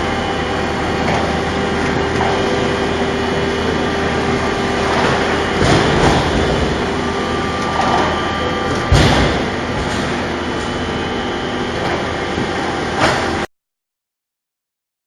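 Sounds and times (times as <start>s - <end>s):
machinery rumbling: 0.0s - 13.5s
heavy thump: 8.8s - 10.1s.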